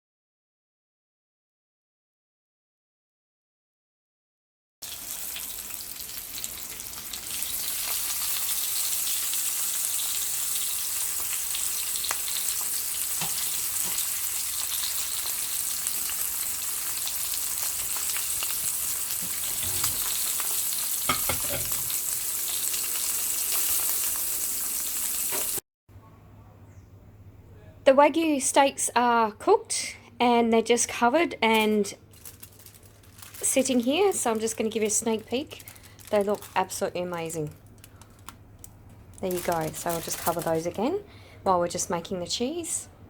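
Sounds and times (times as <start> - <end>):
steaks sizzling in a frying pan: 4.8 - 25.6.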